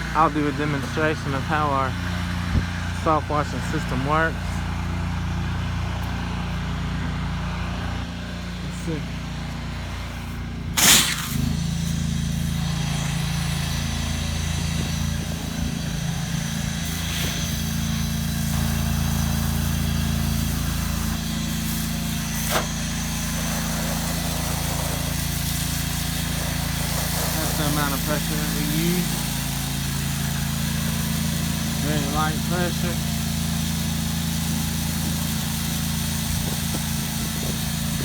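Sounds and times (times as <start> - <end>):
pump engine droning: 0.0 - 38.0
sharp burst of noise: 10.7 - 38.0.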